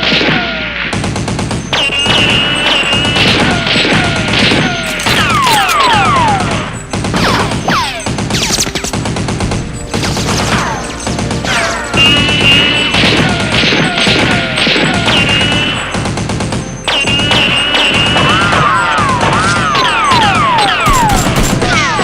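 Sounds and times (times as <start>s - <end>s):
background music: 0.0s - 22.0s
rapid gunfire sound effects: 0.0s - 22.0s
falling whistles: 11.6s - 13.0s.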